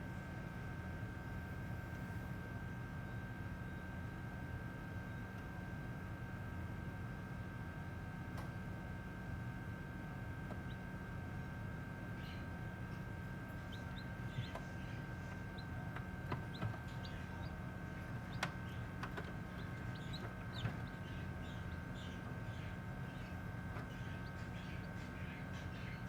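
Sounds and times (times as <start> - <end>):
electrical hum: 0.0 - 26.0
chicks peeping: 10.5 - 10.9, 12.1 - 26.0.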